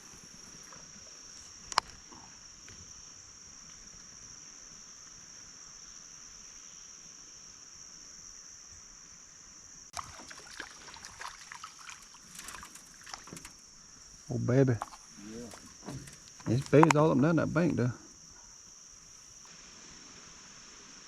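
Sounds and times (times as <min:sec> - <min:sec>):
high-pitched hiss: 0:00.0 - 0:21.0
water splashes: 0:09.9 - 0:13.6
water trickling: 0:09.9 - 0:18.0
small knocks and clicks: 0:12.2 - 0:13.6, 0:14.8 - 0:17.0.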